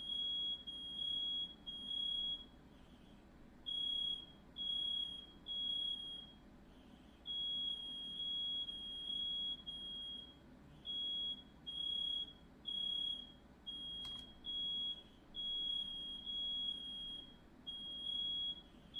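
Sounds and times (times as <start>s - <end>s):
smoke alarm beeping: 0.0s - 2.6s, 3.7s - 6.4s, 7.3s - 18.7s
sharp click: 14.0s - 14.3s.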